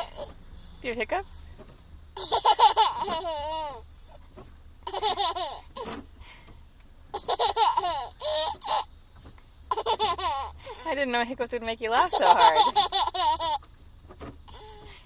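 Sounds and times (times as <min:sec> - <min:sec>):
child giggling: 0:02.2 - 0:03.8, 0:04.9 - 0:06.0, 0:07.2 - 0:08.9, 0:09.7 - 0:10.8, 0:12.0 - 0:13.6.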